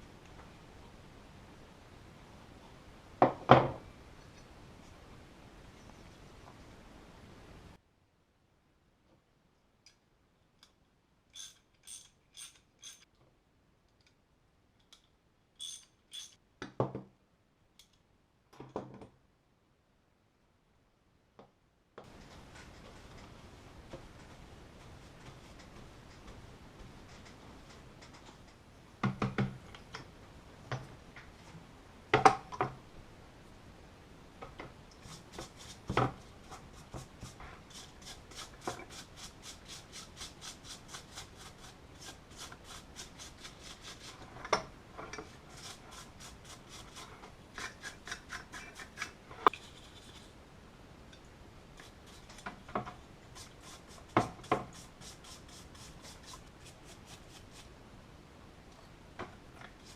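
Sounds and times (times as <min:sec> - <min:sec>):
metal parts clinking: 0:11.4 - 0:13.0
quick scrubbing strokes: 0:35.0 - 0:44.3, 0:45.3 - 0:50.4, 0:53.3 - 0:57.7.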